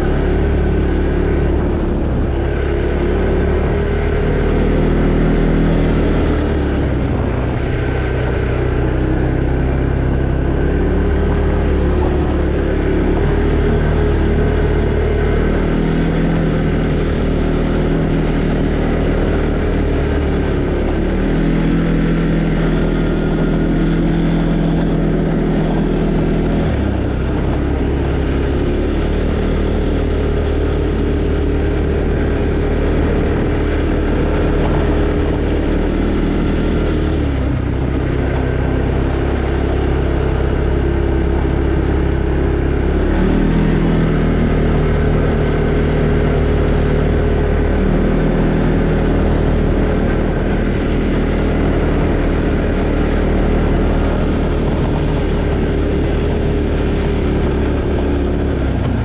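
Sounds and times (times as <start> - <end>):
atv engine running: 0.0 - 59.0.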